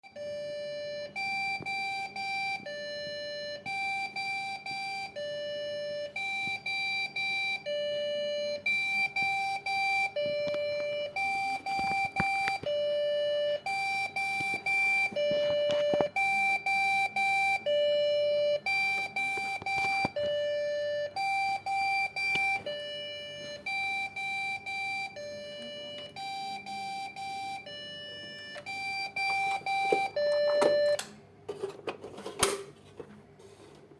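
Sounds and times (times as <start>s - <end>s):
computer error beeps: 9.4s - 31.0s.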